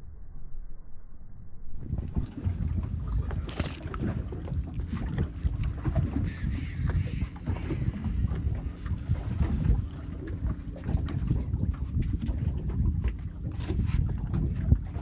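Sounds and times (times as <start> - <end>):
wind buffeting microphone: 1.9 - 15.0
faint steady hum: 2.2 - 10.8
hissing gusts or spray: 6.3 - 9.9.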